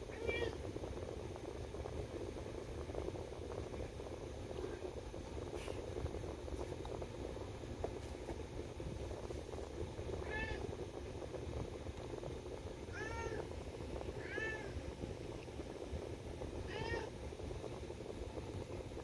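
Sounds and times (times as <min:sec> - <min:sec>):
cat meowing: 0:00.1 - 0:00.6, 0:10.2 - 0:10.6, 0:12.9 - 0:13.4, 0:14.2 - 0:14.7, 0:16.7 - 0:17.1.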